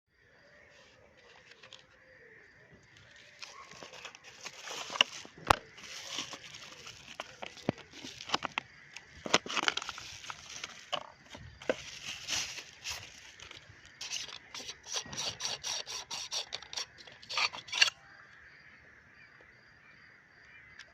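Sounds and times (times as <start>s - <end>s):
rustling and crinkling handling: 0.8s - 2.0s, 2.8s - 15.5s.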